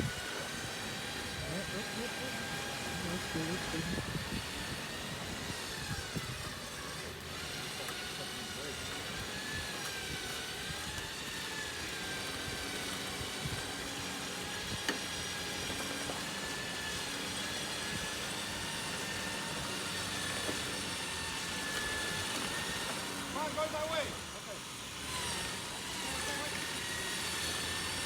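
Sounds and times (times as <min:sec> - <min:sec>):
vehicle running: 0:01.4 - 0:04.9.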